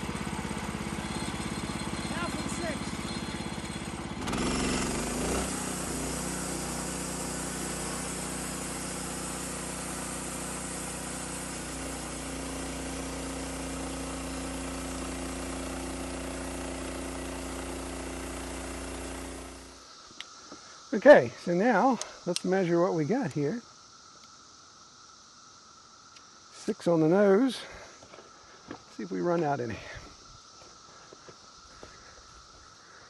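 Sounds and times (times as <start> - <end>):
sawmill engine running: 0.0 - 19.8.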